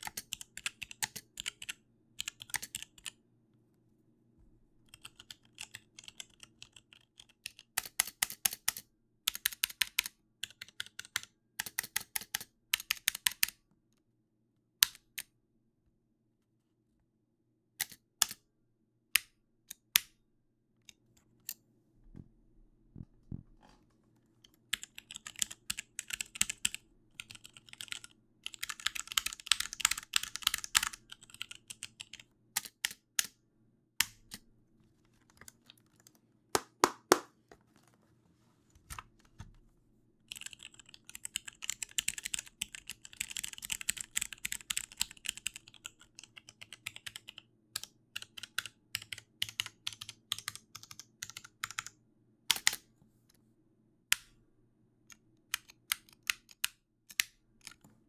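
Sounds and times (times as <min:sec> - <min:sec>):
computer keyboard typing: 0:00.0 - 0:03.2, 0:04.9 - 0:13.5, 0:24.7 - 0:33.3, 0:35.4 - 0:37.3, 0:40.3 - 0:52.8, 0:55.6 - 0:57.8.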